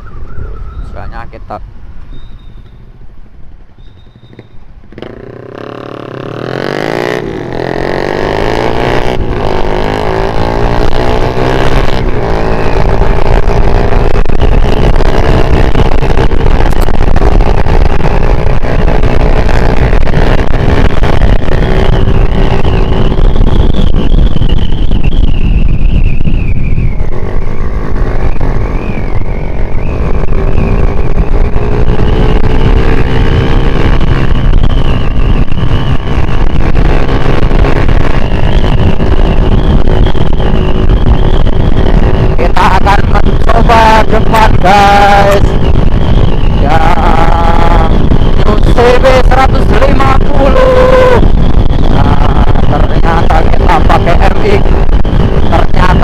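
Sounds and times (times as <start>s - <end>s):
rider talking: 0.4s - 1.7s, 42.4s - 45.6s, 46.6s - 51.2s, 51.9s - 54.8s, 55.5s - 56.0s
motorcycle engine revving: 4.2s - 56.0s.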